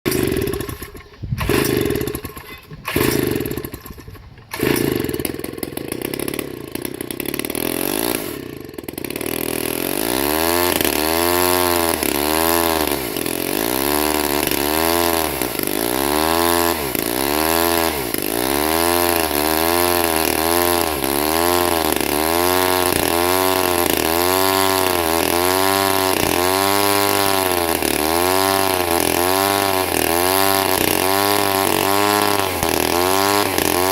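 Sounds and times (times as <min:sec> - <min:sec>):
chainsaw engine running: 0:00.1 - 0:33.9.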